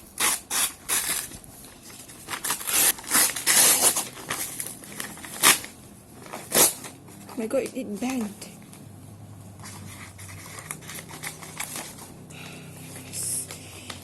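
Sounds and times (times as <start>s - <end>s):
cardboard tearing and crinkling: 0.0s - 7.0s, 9.8s - 12.1s.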